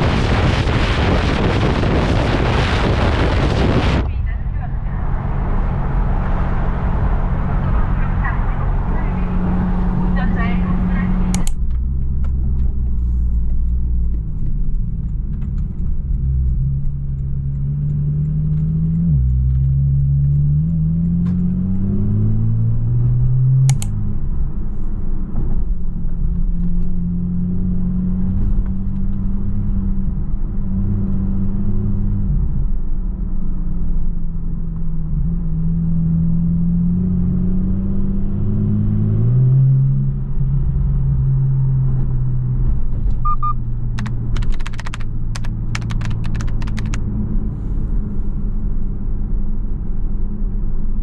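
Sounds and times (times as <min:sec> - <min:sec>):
short click: 0:11.4 - 0:11.6, 0:23.7 - 0:23.9, 0:44.0 - 0:47.0.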